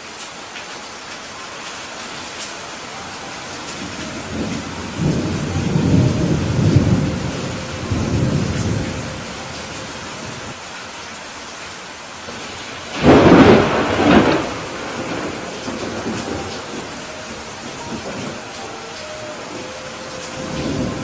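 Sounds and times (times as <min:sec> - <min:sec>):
heavy rain hissing: 0:00.0 - 0:21.0
low roll of thunder: 0:03.8 - 0:09.6, 0:12.3 - 0:18.6, 0:19.4 - 0:21.0.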